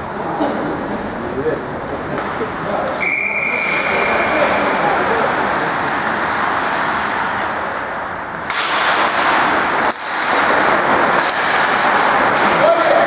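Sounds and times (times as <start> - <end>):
arena crowd din: 0.0 - 8.5, 11.1 - 13.0
hockey sticks and puck clacking: 1.8 - 13.0
skates scraping ice: 1.9 - 13.0.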